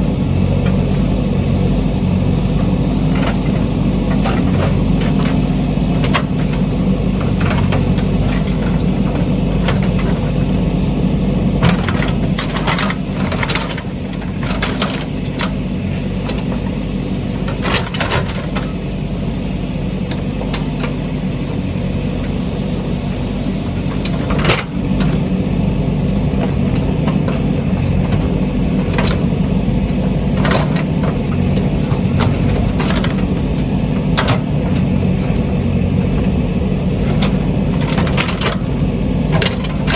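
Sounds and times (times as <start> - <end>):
backhoe diesel engine running: 0.0 - 39.9
machine knocks and clanks: 11.6 - 18.9, 26.2 - 39.9.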